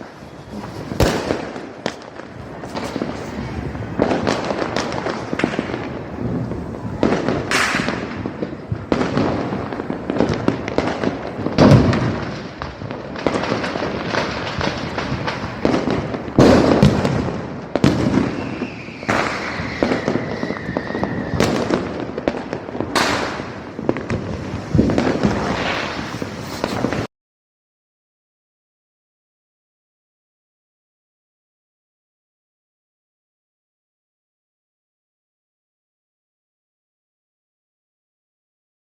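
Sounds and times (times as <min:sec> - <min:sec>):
firecrackers popping and crackling: 0:00.0 - 0:27.1
heavy firecracker bangs: 0:00.0 - 0:27.1.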